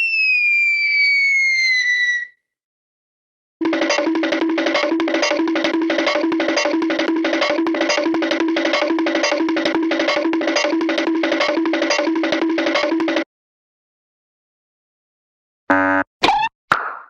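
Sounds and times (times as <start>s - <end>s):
plucked-string comedy tune: 3.6s - 13.2s
wood-block ticks: 3.6s - 13.2s.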